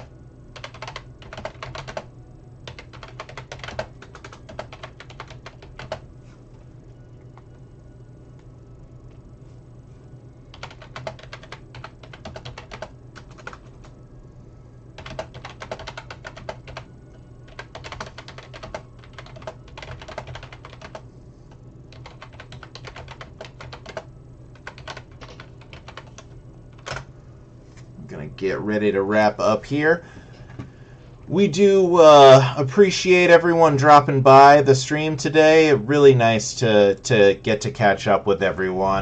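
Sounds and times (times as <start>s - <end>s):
keyboard typing: 0.0s - 6.0s, 10.5s - 13.9s, 15.0s - 16.9s, 17.5s - 21.0s, 21.9s - 27.1s
steady low hum: 0.0s - 39.0s.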